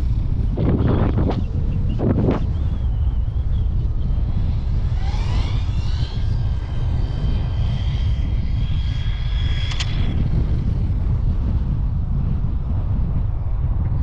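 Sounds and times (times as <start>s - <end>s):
wind buffeting microphone: 0.0s - 14.0s
electric motor whining: 0.5s - 11.3s.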